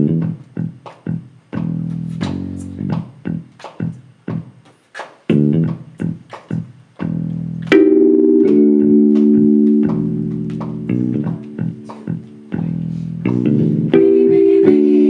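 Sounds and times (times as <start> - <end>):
guitar plucked notes and chord: 7.5 - 15.0.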